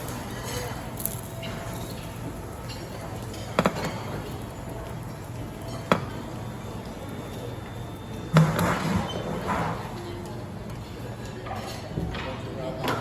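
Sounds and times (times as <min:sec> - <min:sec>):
utensils knocking on cookware: 0:00.4 - 0:04.5.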